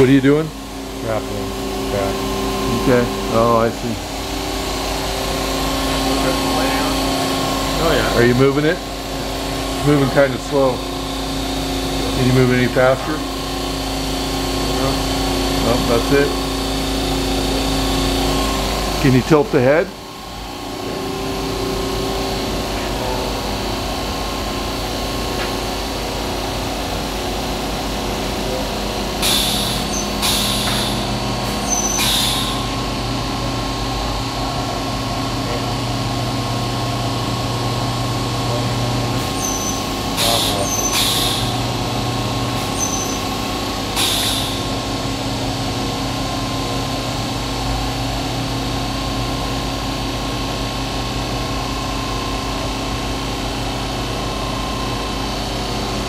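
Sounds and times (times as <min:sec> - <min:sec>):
bandsaw humming: 0:00.0 - 0:47.1
deeper machine hum: 0:00.0 - 0:56.0
short air hisses: 0:29.2 - 0:31.1, 0:31.7 - 0:32.6, 0:40.2 - 0:41.5, 0:44.0 - 0:44.7.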